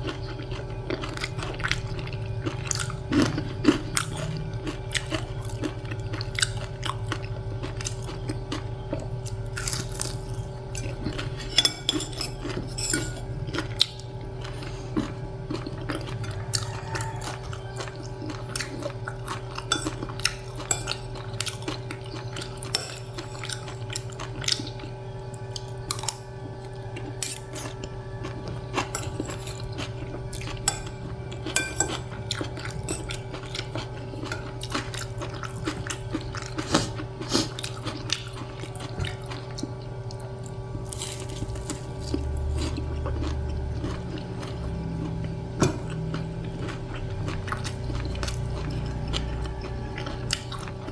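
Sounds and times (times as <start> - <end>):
chewing: 0.0 - 50.9
steady low hum: 0.0 - 50.9
cutlery scraping on a plate: 11.0 - 13.7, 19.6 - 24.2, 27.2 - 27.8, 28.8 - 37.7.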